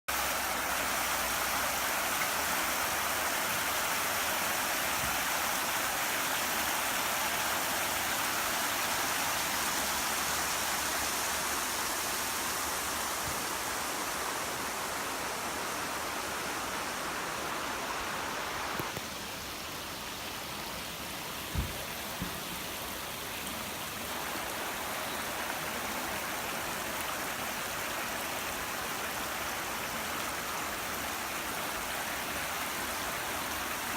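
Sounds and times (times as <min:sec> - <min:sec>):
river rushing over rocks: 0:00.1 - 0:20.0.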